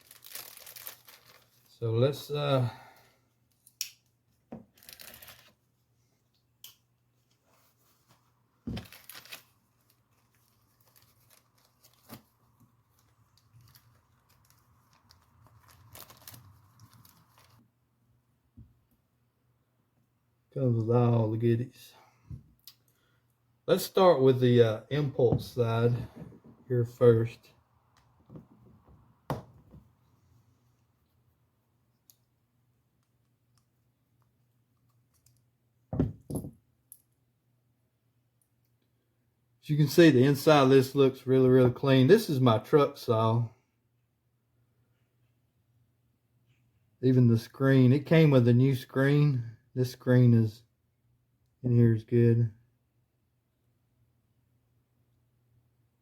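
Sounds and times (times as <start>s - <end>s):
plastic packaging tearing: 0.0s - 1.7s, 4.7s - 5.5s, 8.8s - 17.6s
plastic crinkling and rustling: 0.0s - 1.8s, 4.6s - 5.6s, 7.3s - 17.6s.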